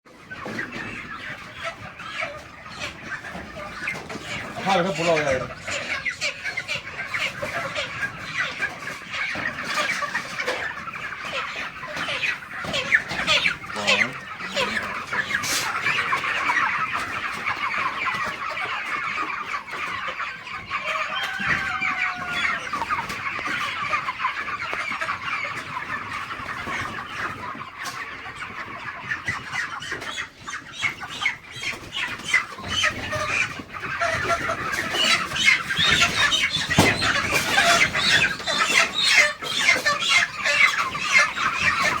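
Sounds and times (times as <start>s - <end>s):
chickens clucking and chirping: 0.1s - 42.0s.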